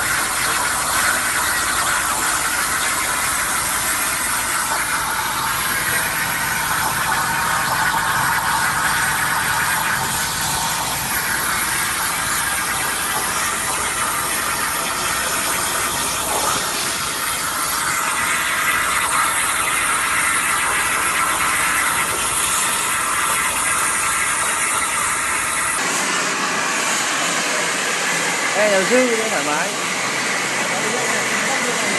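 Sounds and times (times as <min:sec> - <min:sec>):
plasma cutter hissing: 0:00.0 - 0:31.9.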